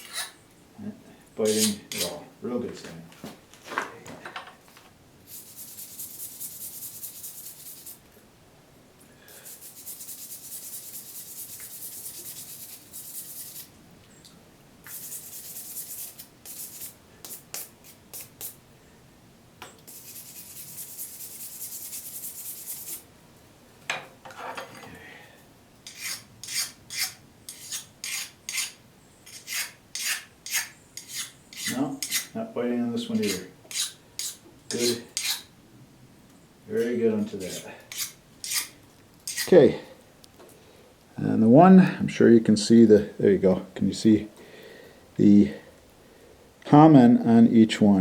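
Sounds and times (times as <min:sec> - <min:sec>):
metal file scraping steel: 0:00.0 - 0:00.4, 0:01.5 - 0:02.2, 0:25.8 - 0:32.3, 0:33.1 - 0:35.5, 0:37.4 - 0:38.7, 0:39.3 - 0:39.5.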